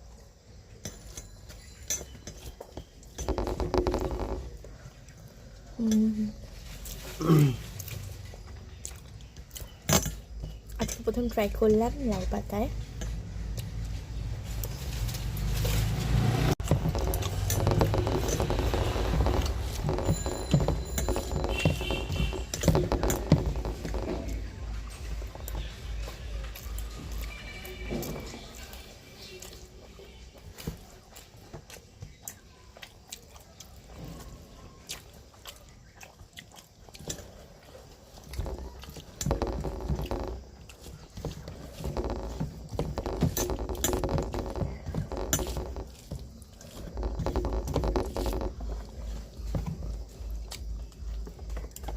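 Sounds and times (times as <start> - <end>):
person chewing food: 6.8 - 10.8, 15.6 - 51.9.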